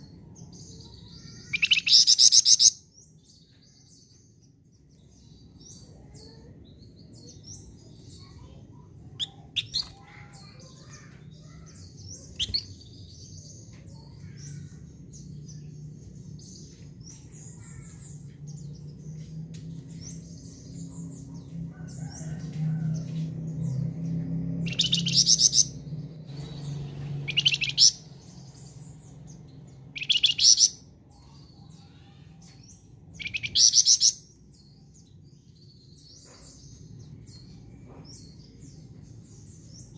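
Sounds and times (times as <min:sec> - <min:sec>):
songbird chirping and twittering: 0:00.0 - 0:39.9.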